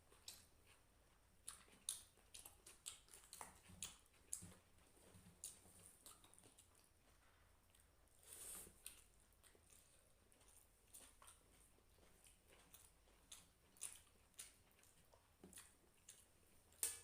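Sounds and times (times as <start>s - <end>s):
wet chewing and lip smacks: 0.1s - 17.0s.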